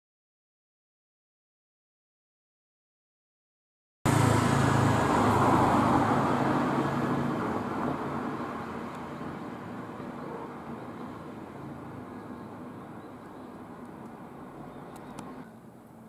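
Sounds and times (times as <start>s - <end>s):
vehicle passing by: 4.1s - 15.5s.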